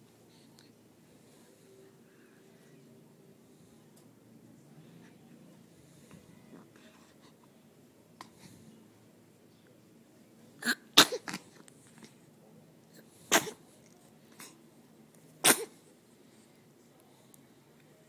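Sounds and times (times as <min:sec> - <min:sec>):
person sneezing: 0:10.6 - 0:11.4, 0:13.3 - 0:13.6, 0:15.4 - 0:15.8.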